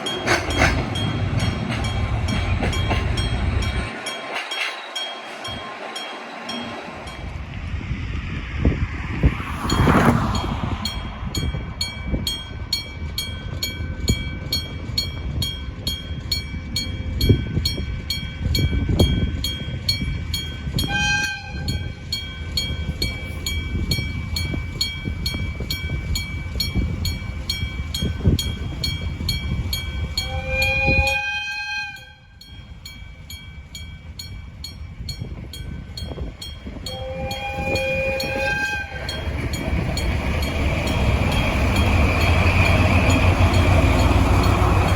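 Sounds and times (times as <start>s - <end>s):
train rumbling and clanking: 0.0s - 44.9s
train horn: 20.8s - 22.0s, 30.2s - 32.4s, 36.8s - 39.4s.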